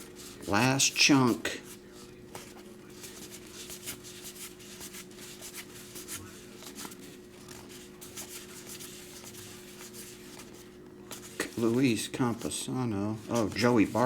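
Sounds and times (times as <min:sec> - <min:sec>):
cards rustling as flipped by hand: 0:00.0 - 0:14.0.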